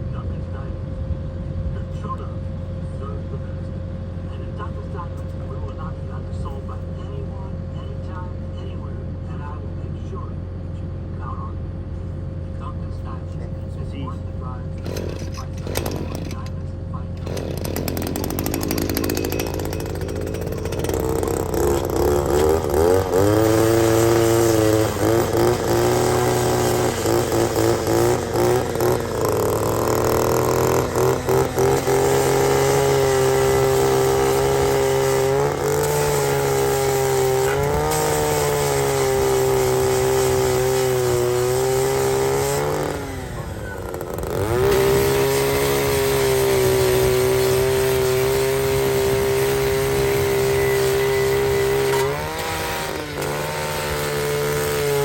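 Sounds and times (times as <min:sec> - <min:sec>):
angle grinder whining: 0:14.8 - 0:55.0.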